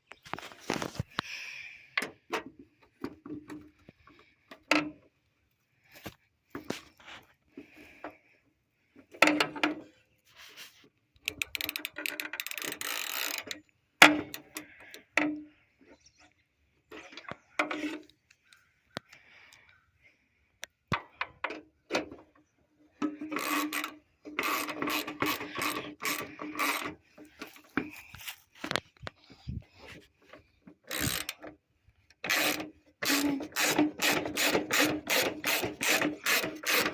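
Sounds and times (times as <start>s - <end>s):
ratchet wrench clicking: 11.2s - 13.6s, 23.0s - 26.9s, 30.9s - 31.5s, 32.2s - 36.9s.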